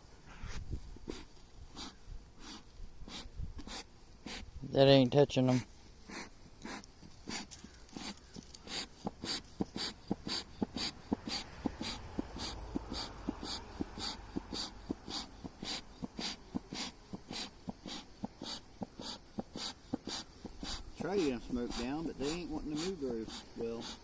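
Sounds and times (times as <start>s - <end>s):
smoker bellows puffing: 5.5s - 24.0s.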